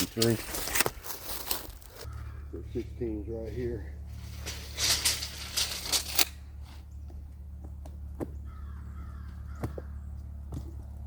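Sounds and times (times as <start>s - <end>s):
steady low hum: 0.0s - 11.0s
crow-like bird calling: 2.0s - 2.6s, 8.4s - 10.1s.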